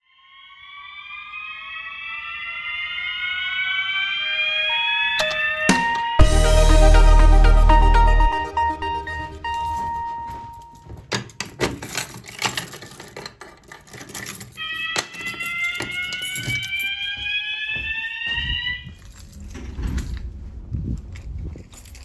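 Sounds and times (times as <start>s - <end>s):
rising slow-whoop alarm horn: 0.6s - 10.7s
clicks and rattling: 11.1s - 16.8s.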